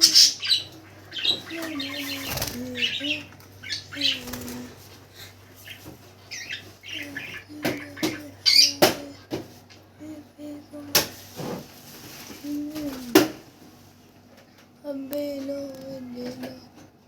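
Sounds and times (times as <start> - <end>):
wings fluttering: 0.0 - 9.1
small birds chirping: 0.0 - 11.0.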